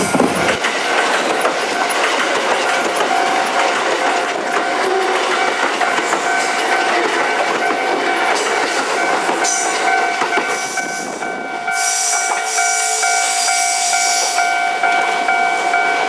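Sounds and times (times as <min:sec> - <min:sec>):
crossing warning signal ringing: 0:00.0 - 0:00.6, 0:04.6 - 0:16.0
train wheels clattering over rail joints: 0:00.0 - 0:10.8.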